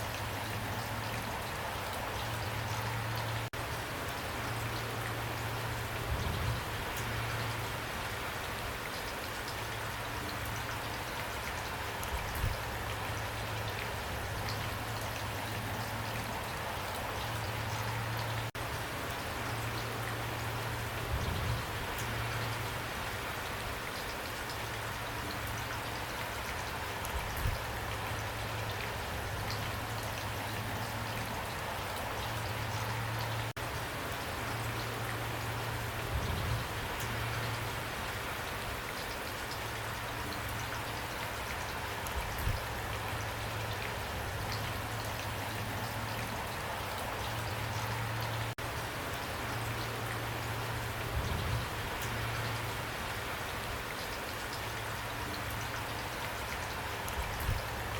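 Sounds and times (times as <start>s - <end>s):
rain patter on a surface: 0.0s - 57.9s.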